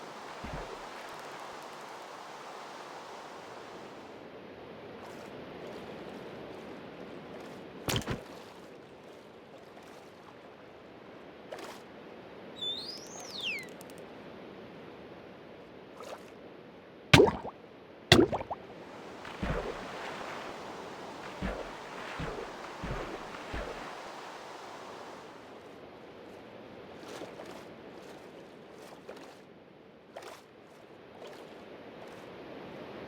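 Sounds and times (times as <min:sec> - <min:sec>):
whistled call: 0:00.0 - 0:00.9, 0:12.6 - 0:13.8
rain falling: 0:00.0 - 0:04.1, 0:18.4 - 0:25.4.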